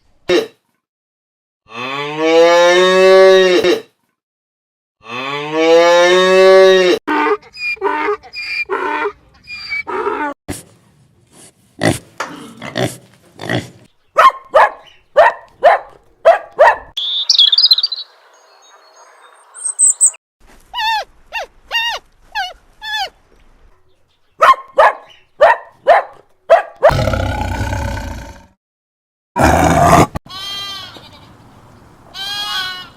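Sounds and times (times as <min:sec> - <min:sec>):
short yelping calls: 0:16.6 - 0:18.0
high chirping: 0:17.0 - 0:20.2.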